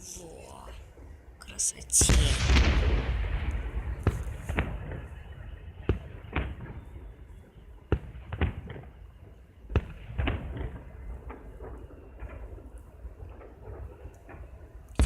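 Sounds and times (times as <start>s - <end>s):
distant fireworks bangs: 1.9s - 15.0s.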